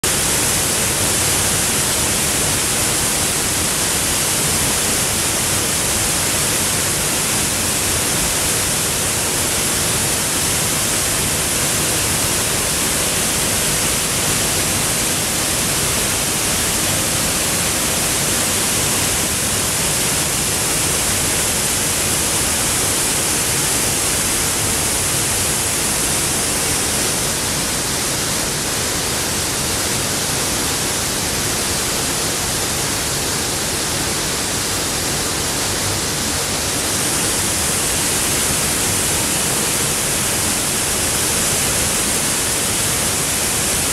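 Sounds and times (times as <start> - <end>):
waterfall rushing: 0.0 - 43.9.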